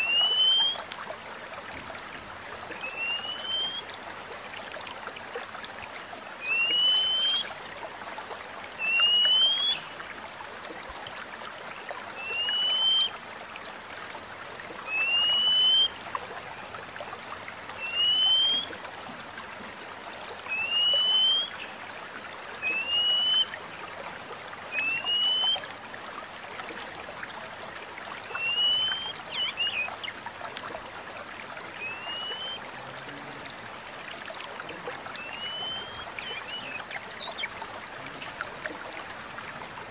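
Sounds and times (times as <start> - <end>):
bird whistling: 0.0 - 0.8, 2.8 - 3.9, 6.4 - 7.5, 8.8 - 9.9, 12.2 - 13.1, 14.9 - 16.0, 17.8 - 18.7, 20.5 - 21.7, 22.6 - 23.5, 24.7 - 25.6, 28.4 - 30.1, 31.8 - 32.6, 35.2 - 37.5
trickling water: 0.0 - 39.9.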